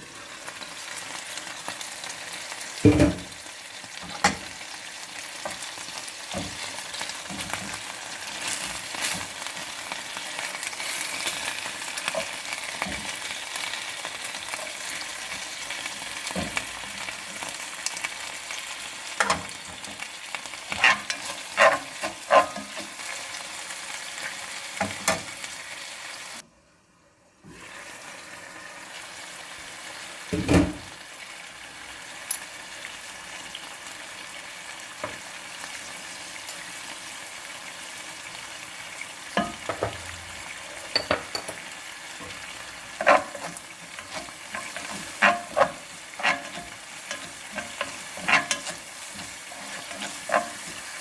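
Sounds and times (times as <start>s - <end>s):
food sizzling in hot oil: 0.0s - 26.4s, 27.4s - 51.0s
utensil clicking against pan: 19.2s - 20.0s, 43.0s - 51.0s.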